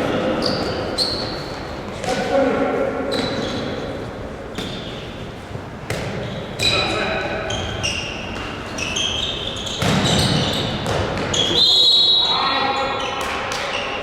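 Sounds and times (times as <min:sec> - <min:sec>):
players' voices echoing: 0:00.0 - 0:04.5, 0:05.7 - 0:08.6, 0:09.9 - 0:14.0
shoes squeaking on floor: 0:00.1 - 0:02.0, 0:03.1 - 0:05.5, 0:06.1 - 0:14.0
ball bouncing on court: 0:05.8 - 0:07.0, 0:08.3 - 0:11.6.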